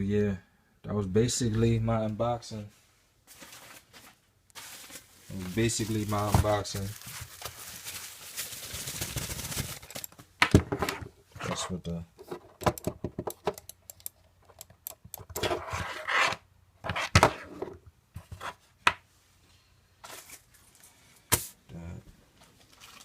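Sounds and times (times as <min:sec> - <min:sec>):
packaging rustling: 0:03.3 - 0:10.2.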